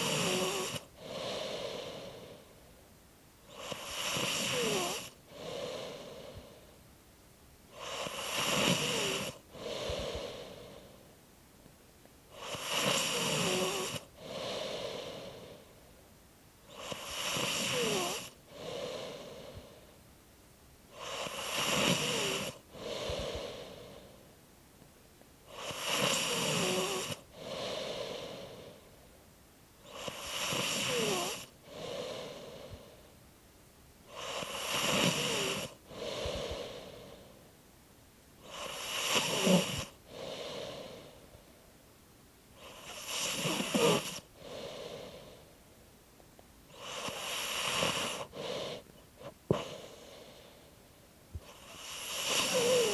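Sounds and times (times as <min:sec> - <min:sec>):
snoring: 0:00.0 - 0:02.5, 0:03.4 - 0:06.7, 0:07.7 - 0:11.0, 0:12.3 - 0:15.7, 0:16.6 - 0:19.9, 0:20.9 - 0:24.2, 0:25.4 - 0:28.9, 0:29.8 - 0:33.0, 0:34.1 - 0:37.4, 0:38.4 - 0:41.2, 0:42.6 - 0:45.5, 0:46.7 - 0:50.7, 0:51.4 - 0:52.9.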